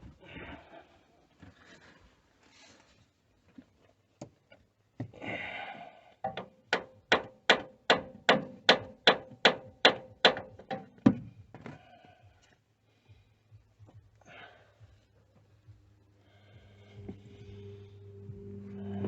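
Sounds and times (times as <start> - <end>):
scraping sound: 16.7 - 19.0.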